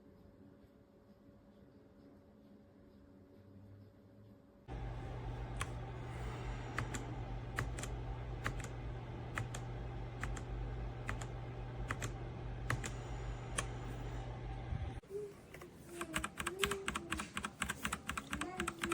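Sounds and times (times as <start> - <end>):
steady low hum: 4.7 - 16.6
mechanical keyboard keystrokes: 6.8 - 13.8, 16.0 - 18.9.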